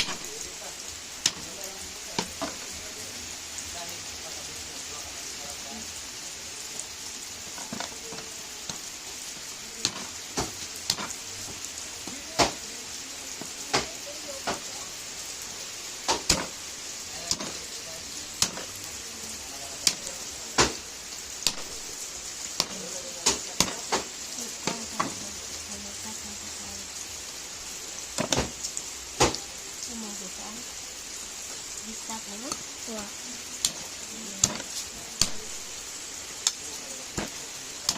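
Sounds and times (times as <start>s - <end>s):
food sizzling in a frying pan: 0.0s - 37.9s
utensil knocking in pan: 16.1s - 16.5s, 17.3s - 17.6s, 18.4s - 18.7s, 21.4s - 21.7s.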